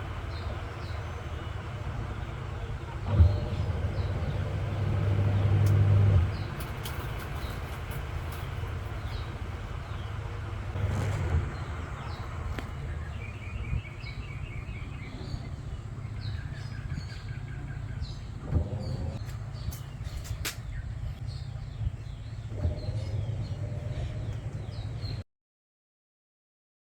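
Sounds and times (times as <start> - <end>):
birds chirping and trilling: 0.0 - 25.2
steady low hum: 0.0 - 25.2
sharp clicks: 19.2 - 20.7.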